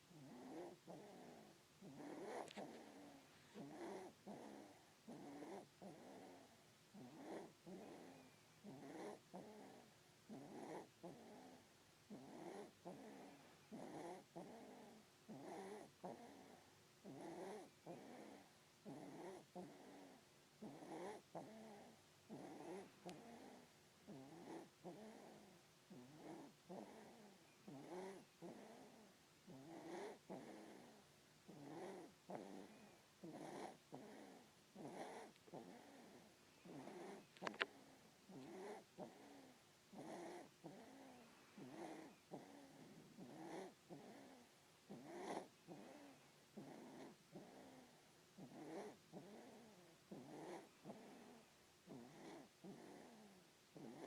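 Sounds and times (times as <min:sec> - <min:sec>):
baby snoring faintly: 0:00.0 - 0:54.0.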